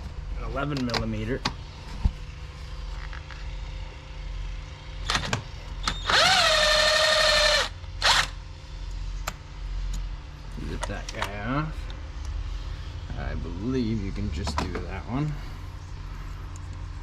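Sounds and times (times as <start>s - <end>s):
power drill whining: 5.8s - 8.4s.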